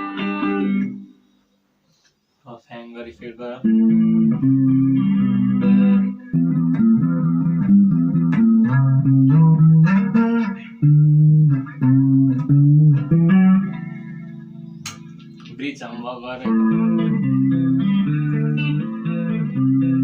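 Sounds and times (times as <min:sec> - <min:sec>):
electric guitar with flanger: 0:03.6 - 0:15.6, 0:16.4 - 0:20.0.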